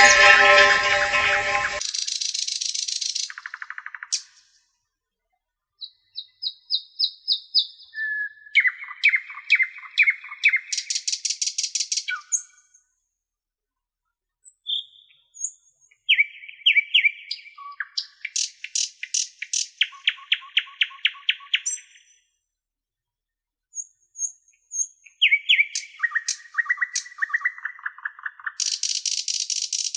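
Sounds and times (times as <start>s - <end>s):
songbird trilling: 16.1s - 22.0s, 24.2s - 29.9s.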